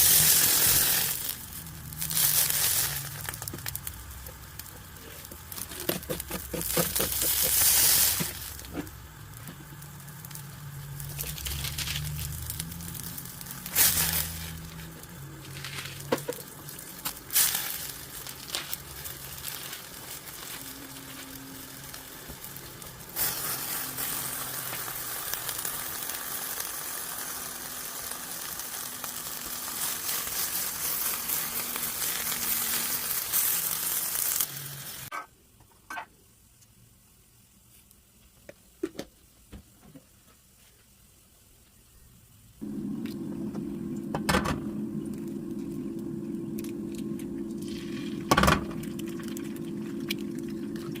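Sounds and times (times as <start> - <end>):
food sizzling in a pan: 0.0 - 35.1.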